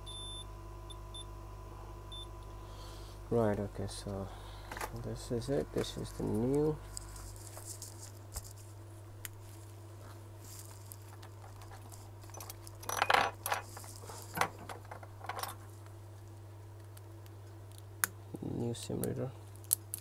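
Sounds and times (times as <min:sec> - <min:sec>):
steady low hum: 0:00.0 - 0:20.0
small tools clinking: 0:11.1 - 0:14.0.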